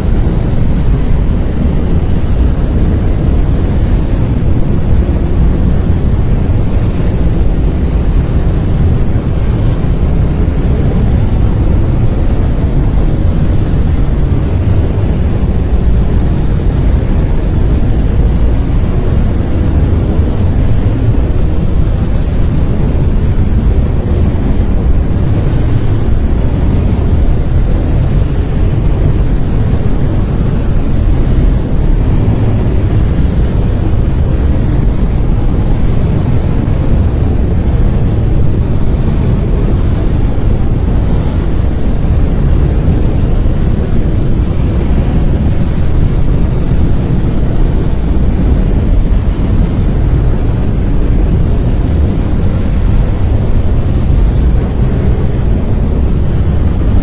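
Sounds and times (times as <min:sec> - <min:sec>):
brown noise hiss: 0:00.0 - 0:57.0.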